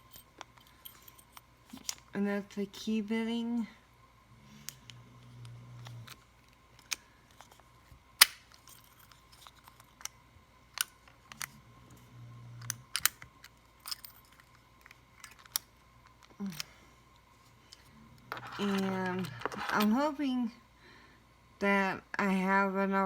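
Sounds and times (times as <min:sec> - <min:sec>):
padlock and lock picks clicking: 0:12.6 - 0:16.7.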